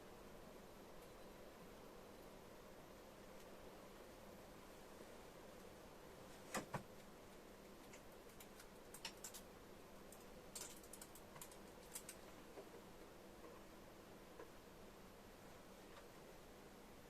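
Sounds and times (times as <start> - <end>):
quiet steady hum: 0.0 - 17.0
faint clicks and taps: 6.5 - 9.5, 10.1 - 13.7, 14.3 - 14.6.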